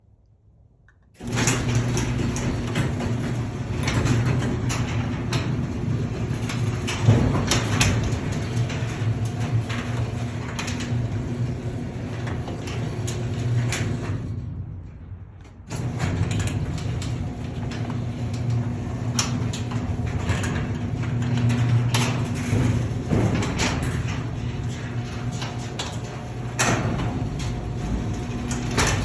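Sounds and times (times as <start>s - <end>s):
clicks and rattles: 0.9s - 14.3s
garage door opener motor hum: 1.1s - 29.0s.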